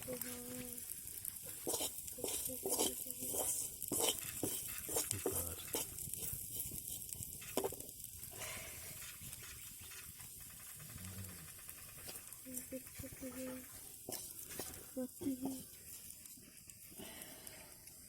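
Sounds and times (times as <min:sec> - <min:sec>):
food sizzling in a pan: 0:00.0 - 0:17.2
spoon scraping a pan: 0:01.2 - 0:07.9, 0:12.1 - 0:14.8.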